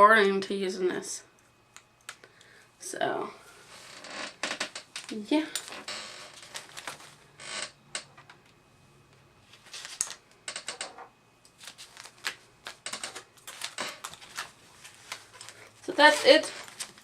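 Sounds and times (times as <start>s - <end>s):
packaging rustling: 5.0s - 7.2s, 9.5s - 10.2s, 11.5s - 17.0s.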